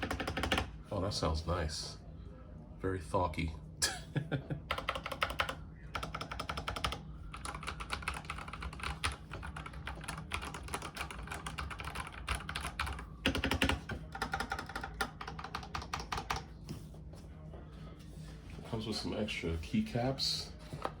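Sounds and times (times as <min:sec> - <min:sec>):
fast typing on mechanical keyboard: 0:00.0 - 0:00.7, 0:04.7 - 0:16.5.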